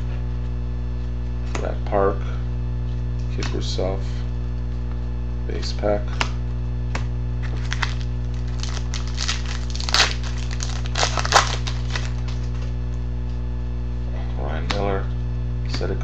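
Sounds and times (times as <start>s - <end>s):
electrical hum: 0.0s - 16.0s
wrapper crinkling and tearing: 7.4s - 12.7s.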